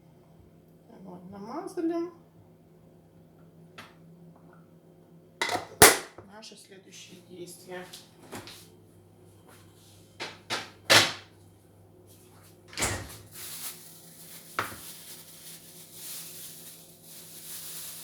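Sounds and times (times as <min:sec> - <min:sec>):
kitchen knocks and clunks: 0:05.4 - 0:06.2, 0:10.2 - 0:11.3.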